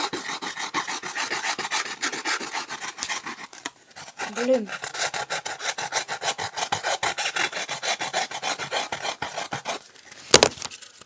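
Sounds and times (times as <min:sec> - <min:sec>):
sandpaper rubbing on foam: 0:00.0 - 0:09.8
camera falling onto table: 0:10.3 - 0:10.7.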